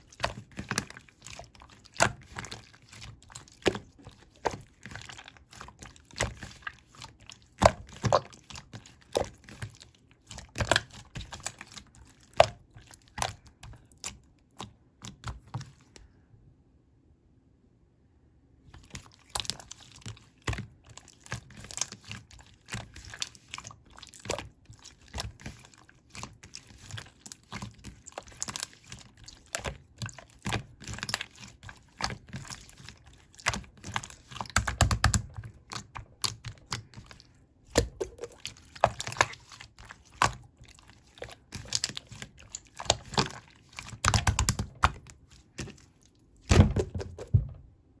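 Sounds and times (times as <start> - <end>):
deep slime squishes: 0.0 - 16.2, 18.7 - 48.0
slime clicking and popping: 42.8 - 45.0.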